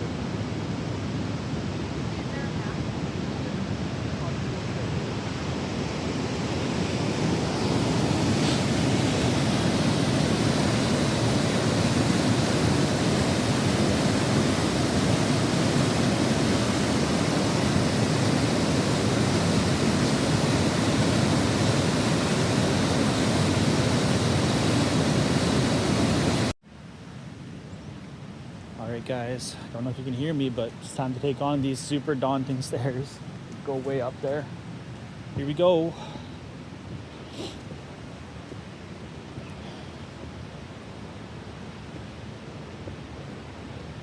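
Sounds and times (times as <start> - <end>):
waterfall roaring: 0.0 - 26.5.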